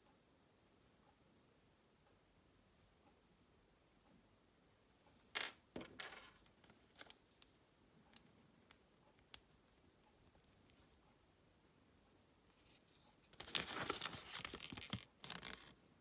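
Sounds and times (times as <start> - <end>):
crackling wrapper rustle: 13.3 - 15.8.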